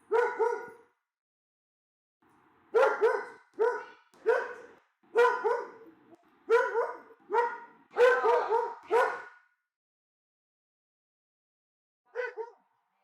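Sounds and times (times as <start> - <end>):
dog barking aggressively: 0.0 - 0.8, 2.8 - 5.8, 6.5 - 9.4.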